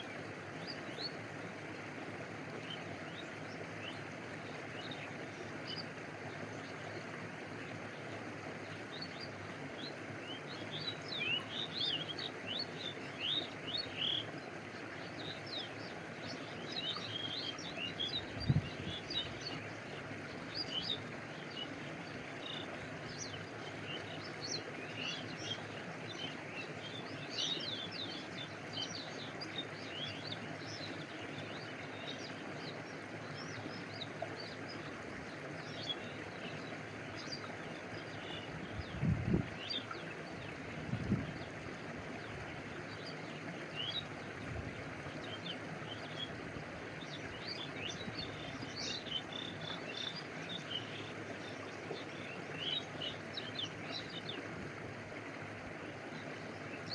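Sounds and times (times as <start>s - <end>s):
stream water flowing: 0.0s - 56.9s
birds chirping: 35.6s - 40.7s, 45.0s - 54.4s.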